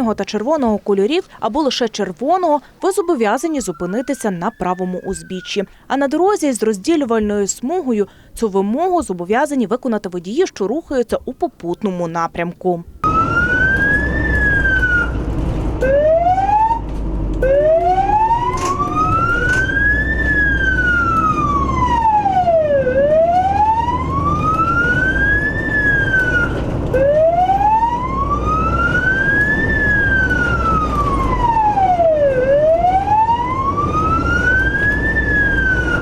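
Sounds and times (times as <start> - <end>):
emergency siren wailing: 2.8 - 7.2, 13.0 - 36.0.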